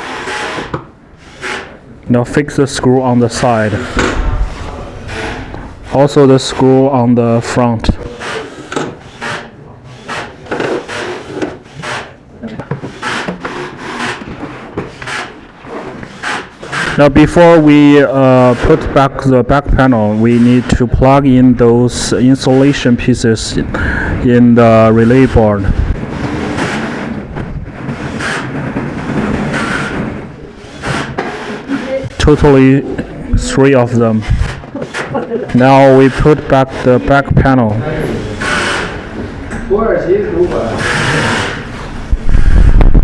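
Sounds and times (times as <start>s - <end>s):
screws scraping into sheet metal: 34.1s - 37.2s, 38.0s - 39.2s, 40.5s - 42.0s.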